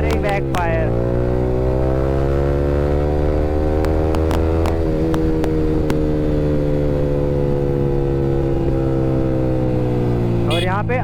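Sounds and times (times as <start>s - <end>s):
motorcycle engine running: 0.0s - 11.0s
sharp exhaust pops: 3.7s - 6.2s.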